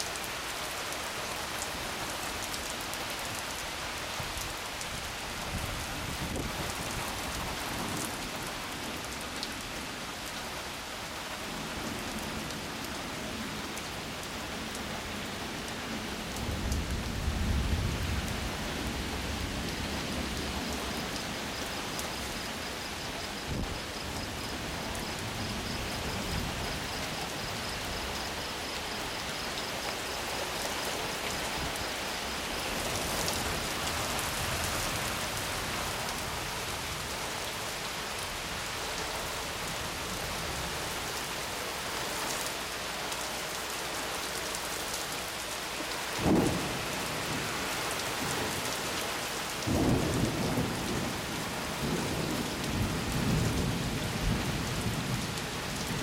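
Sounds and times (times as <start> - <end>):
steady rain: 0.0 - 56.0
rolling thunder: 16.4 - 20.7, 46.2 - 47.5, 49.6 - 55.2
sharp thunder clap: 46.2 - 46.8.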